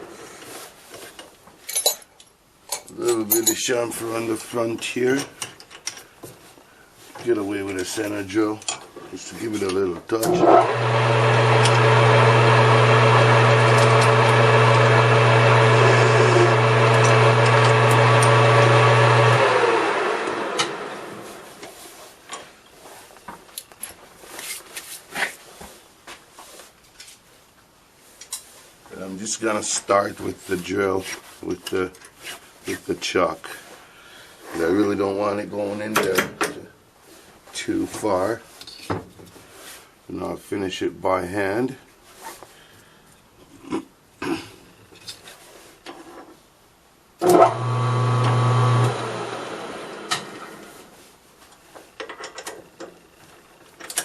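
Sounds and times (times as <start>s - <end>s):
hand tools clicking and clattering: 5.1s - 6.4s
metal lathe humming: 10.2s - 21.2s, 47.2s - 50.7s.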